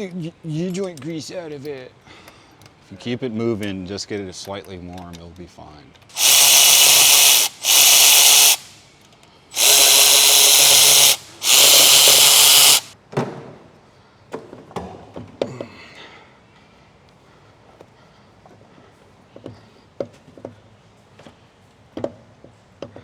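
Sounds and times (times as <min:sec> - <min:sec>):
power tool bursts: 0:06.1 - 0:08.8, 0:09.6 - 0:13.0.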